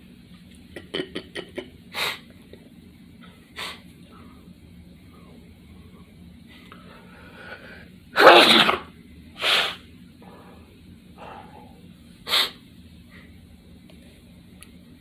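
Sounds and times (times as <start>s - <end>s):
person sneezing: 8.2s - 9.8s, 12.3s - 12.6s.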